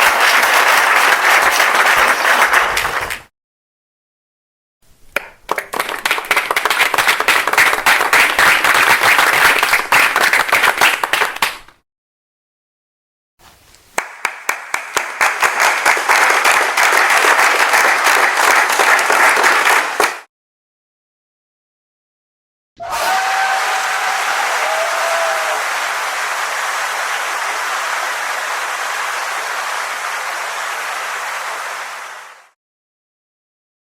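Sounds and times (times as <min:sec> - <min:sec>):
audience applause: 0:00.0 - 0:03.3, 0:05.5 - 0:11.5, 0:14.0 - 0:20.3, 0:22.8 - 0:32.6.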